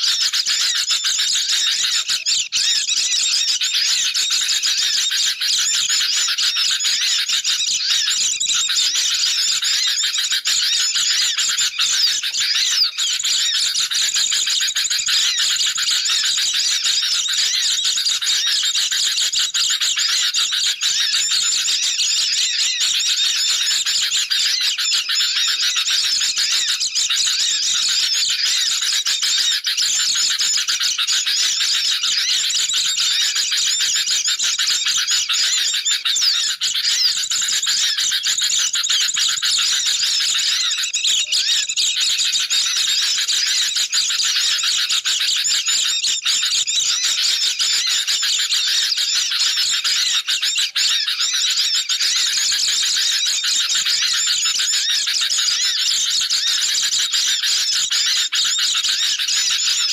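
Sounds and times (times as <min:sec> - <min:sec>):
bulbuls calling: 0:00.0 - 0:45.5
high bird chirps and trills: 0:00.0 - 0:56.7.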